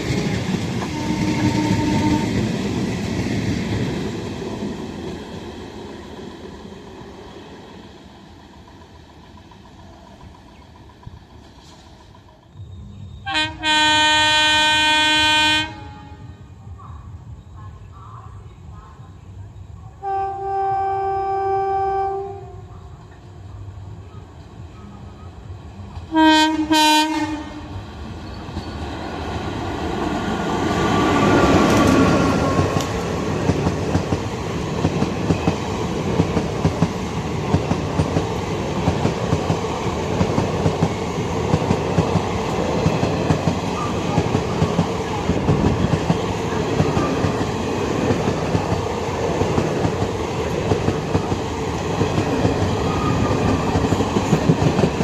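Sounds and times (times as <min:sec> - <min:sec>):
train passing at speed: 0:00.0 - 0:55.0
train horn blasts: 0:00.8 - 0:02.4, 0:13.2 - 0:16.5, 0:20.0 - 0:22.7, 0:26.1 - 0:27.8.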